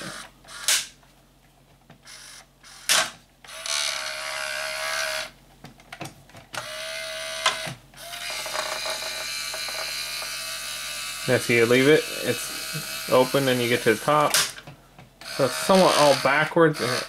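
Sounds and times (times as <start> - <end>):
small electric motors whining: 0.0 - 0.9, 3.5 - 5.4, 6.6 - 14.3, 15.2 - 17.0.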